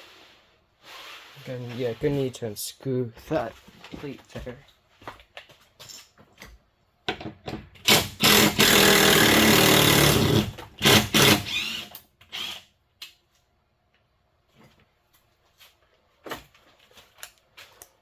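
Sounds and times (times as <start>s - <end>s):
electric drill driver motor: 7.9s - 12.7s.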